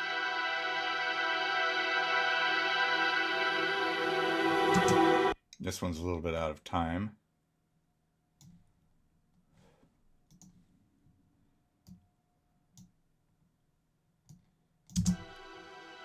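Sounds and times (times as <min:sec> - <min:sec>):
computer mouse clicks: 0:10.3 - 0:10.6.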